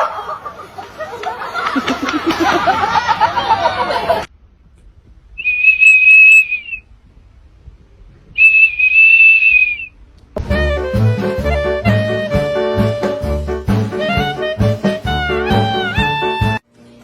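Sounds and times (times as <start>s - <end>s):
high whistled notes: 5.4s - 6.8s, 8.4s - 9.9s
brass music: 10.4s - 16.6s.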